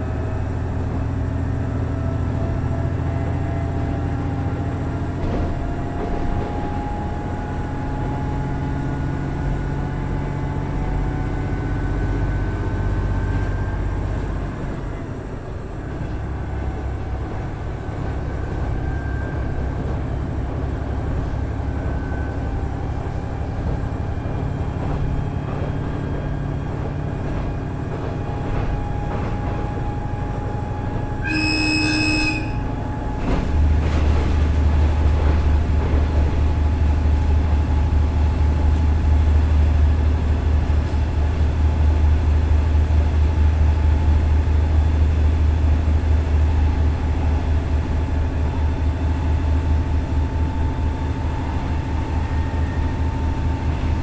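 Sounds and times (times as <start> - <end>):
diesel railcar engine droning: 0.0 - 54.0
wheel and rail noise: 12.5 - 54.0.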